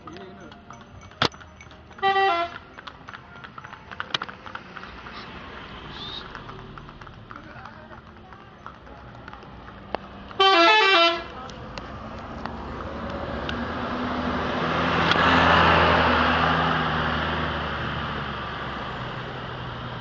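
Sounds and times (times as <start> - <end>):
large vehicle passing: 1.6 - 20.0
musical bus horn: 2.0 - 2.7, 10.3 - 11.4.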